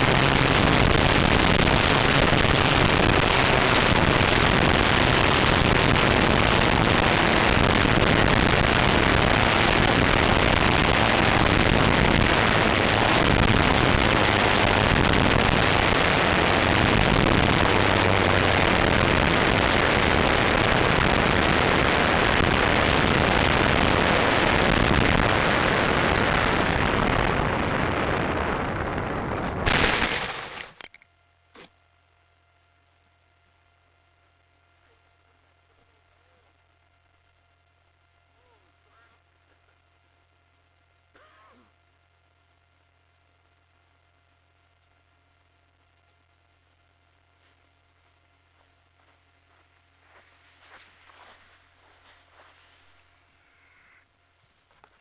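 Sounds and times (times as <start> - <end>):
propeller noise: 0.0 - 30.9
loud short burst: 29.7 - 30.8.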